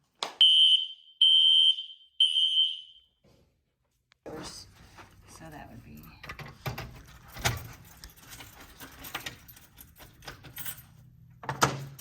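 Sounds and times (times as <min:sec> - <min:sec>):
metal clicks and rattles: 0:06.1 - 0:12.0.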